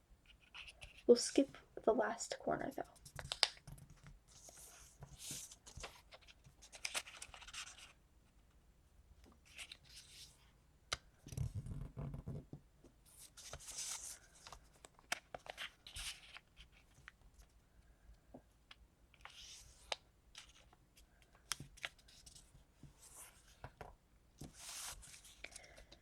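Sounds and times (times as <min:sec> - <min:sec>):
paper rustling and creasing: 0:02.9 - 0:08.0, 0:13.2 - 0:17.5, 0:21.4 - 0:26.0.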